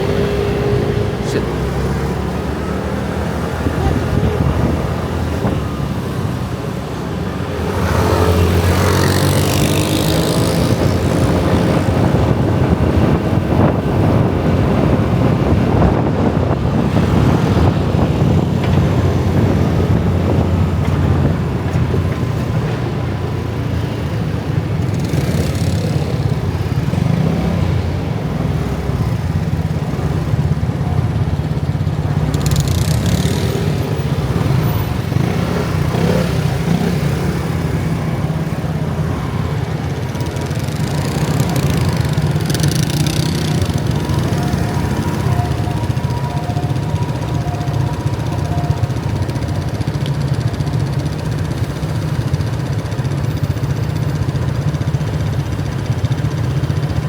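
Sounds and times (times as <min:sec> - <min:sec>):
scooter traffic drone: 0:00.0 - 0:57.0
scooter passing close by: 0:07.6 - 0:22.6.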